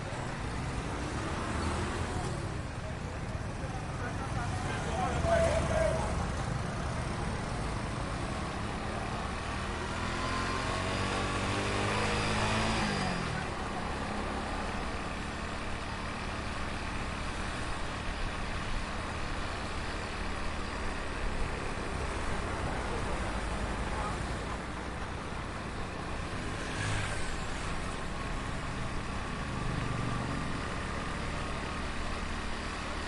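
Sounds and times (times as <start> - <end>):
heavy street traffic: 0.0 - 33.0
engine revving as it passes: 7.0 - 15.8, 26.1 - 28.0.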